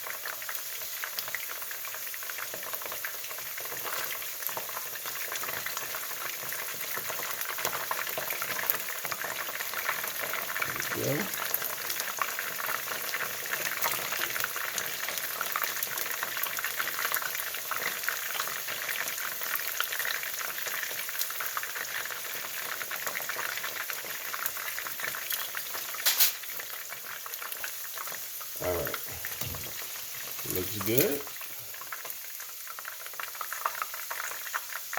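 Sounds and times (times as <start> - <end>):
chicken deep-frying in oil: 0.0 - 34.9
sharp click: 26.0 - 26.4.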